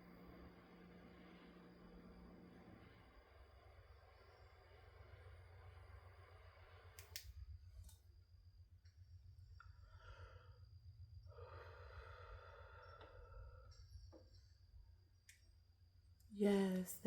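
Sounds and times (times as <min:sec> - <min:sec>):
steady low hum: 0:00.0 - 0:17.0
faint clicks: 0:07.0 - 0:08.0.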